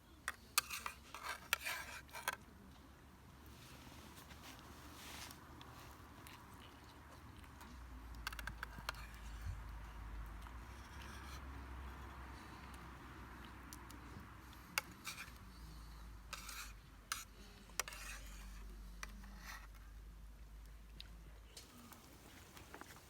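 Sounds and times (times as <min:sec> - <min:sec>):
utensils scraping a dish: 0:00.6 - 0:02.3
faint steady hiss: 0:20.0 - 0:23.0.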